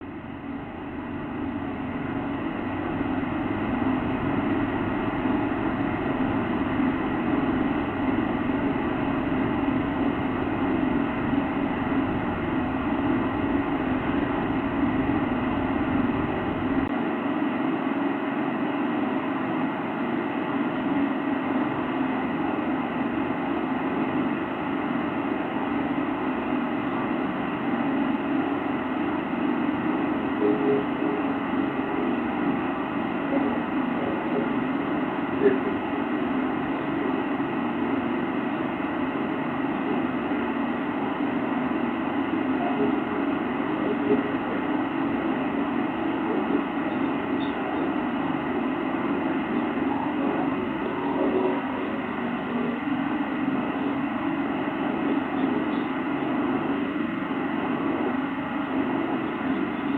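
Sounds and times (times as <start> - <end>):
deep rumble: 0.4 - 16.9
steady drone with held tones: 0.8 - 16.9.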